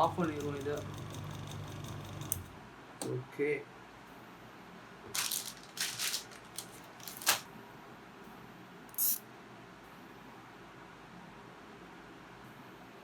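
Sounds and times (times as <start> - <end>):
small hard objects clinking: 5.1 - 7.4.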